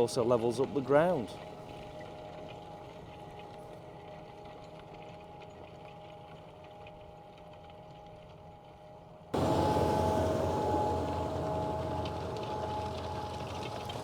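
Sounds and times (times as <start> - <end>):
distant tractor engine hum: 9.4 - 14.0
steady whine: 9.4 - 14.0.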